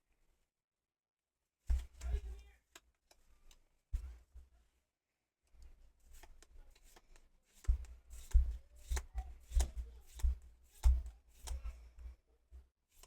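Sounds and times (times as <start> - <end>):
trading cards sliding and tapping: 6.1 - 11.8.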